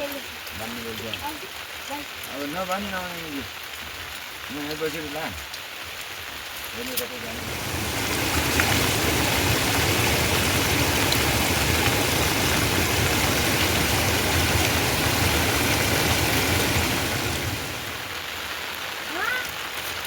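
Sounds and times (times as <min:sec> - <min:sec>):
heavy rain: 0:00.0 - 0:20.0.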